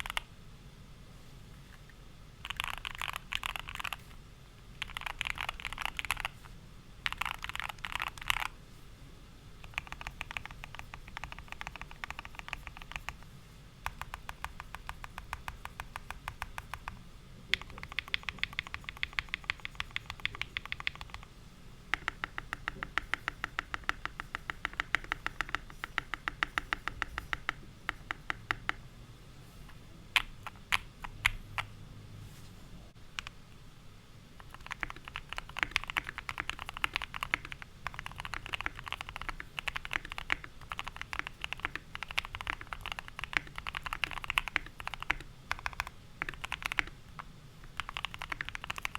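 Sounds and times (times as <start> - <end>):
mechanical keyboard typing: 0.0 - 0.3, 2.4 - 4.1, 4.8 - 6.4, 7.0 - 8.6, 9.6 - 13.2, 13.8 - 21.3, 21.9 - 28.8, 30.2 - 31.7, 34.4 - 48.9.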